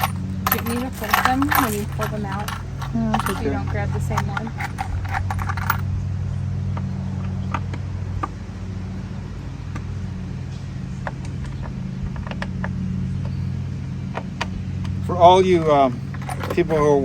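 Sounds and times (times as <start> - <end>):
metal screws and tools clicking: 0.0 - 5.8, 16.1 - 16.9
low mechanical hum: 0.0 - 17.0.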